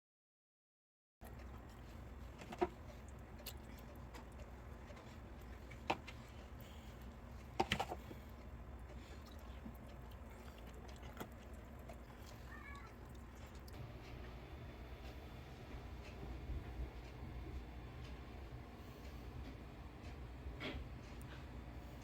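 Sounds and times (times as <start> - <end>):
low room hum: 1.2 - 22.0.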